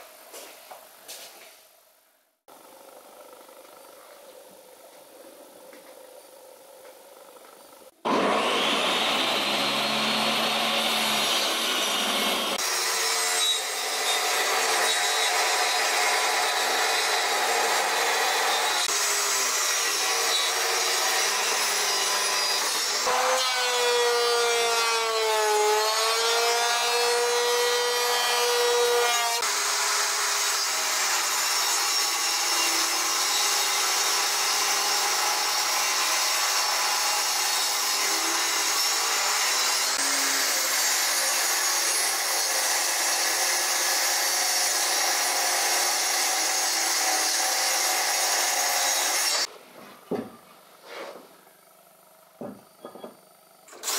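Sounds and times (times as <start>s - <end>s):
power tool cutting wood: 8.0s - 49.5s, 52.7s - 53.9s.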